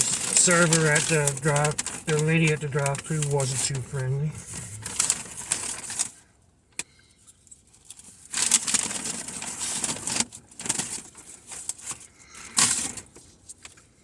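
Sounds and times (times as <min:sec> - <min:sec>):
paper bag rustling: 0:00.0 - 0:06.2, 0:07.8 - 0:13.6.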